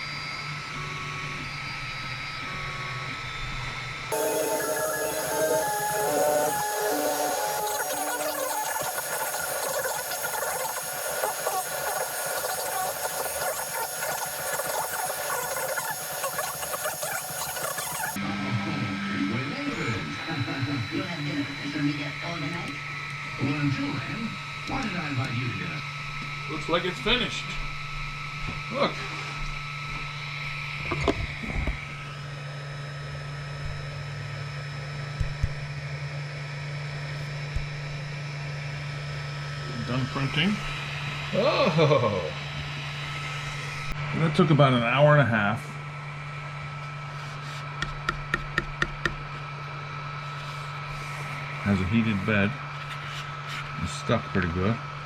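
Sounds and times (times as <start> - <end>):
cooling fans humming: 3.9 - 18.2.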